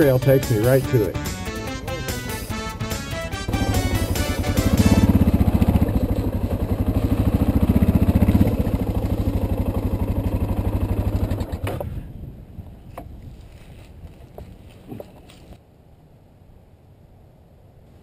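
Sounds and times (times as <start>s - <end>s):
motorcycle engine running: 1.4s - 12.0s.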